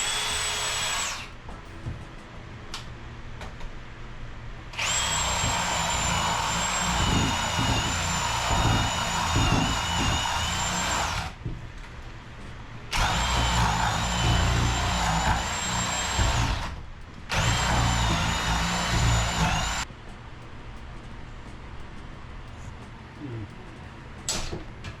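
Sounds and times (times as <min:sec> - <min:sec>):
power drill boring into wood: 0:00.0 - 0:01.3, 0:04.8 - 0:11.4, 0:12.9 - 0:19.8.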